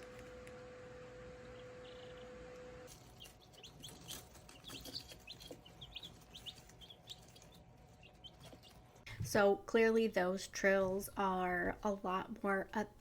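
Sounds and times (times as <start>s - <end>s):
steady hum: 0.0s - 13.0s
chickens chirping: 1.4s - 9.0s.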